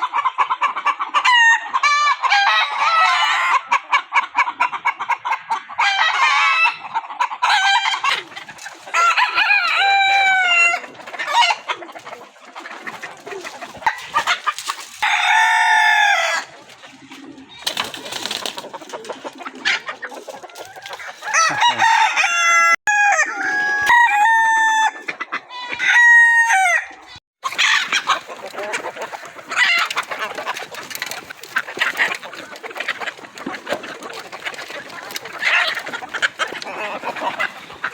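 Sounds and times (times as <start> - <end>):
hens clucking: 0.0 - 37.9
roosters crowing: 1.2 - 4.1, 5.6 - 18.2, 19.0 - 37.9.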